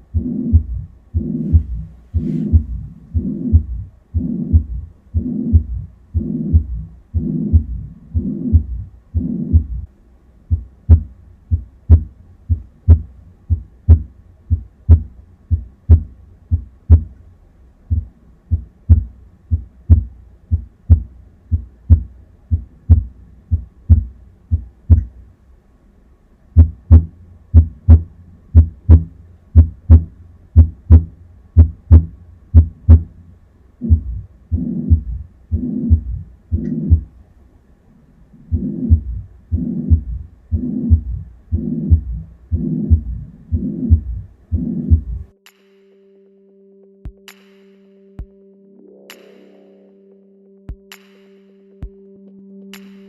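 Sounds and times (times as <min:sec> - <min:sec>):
heartbeat: 0:00.0 - 0:09.9, 0:10.5 - 0:17.2, 0:17.9 - 0:25.2, 0:26.6 - 0:33.2, 0:33.8 - 0:37.2, 0:38.5 - 0:45.4
whooshing heart murmur: 0:00.0 - 0:09.9, 0:33.8 - 0:37.1, 0:38.5 - 0:45.3.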